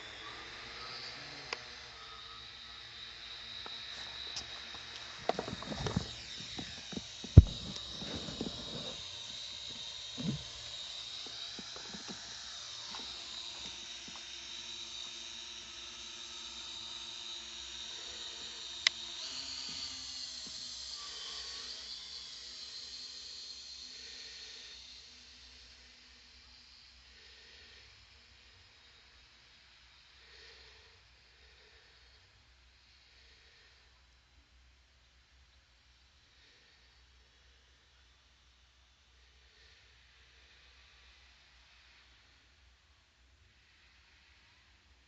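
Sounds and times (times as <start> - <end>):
electric motors whining: 0.0 - 30.7
knocks and thumps: 5.3 - 8.7.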